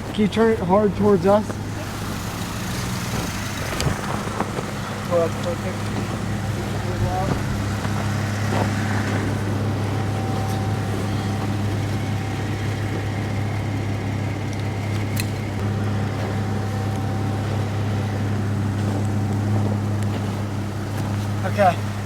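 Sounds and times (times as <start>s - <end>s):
faint steady whine: 0.0s - 22.0s
vehicle engine idling: 0.0s - 22.0s.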